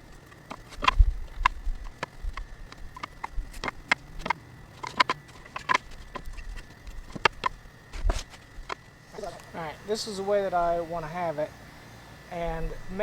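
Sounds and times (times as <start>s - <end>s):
wooden boards knocking together: 0.4s - 8.8s.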